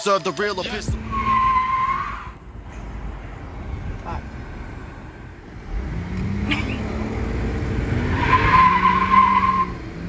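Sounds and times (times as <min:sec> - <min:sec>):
car engine pulling away: 0:00.7 - 0:10.0
tyre squeal: 0:08.0 - 0:09.8.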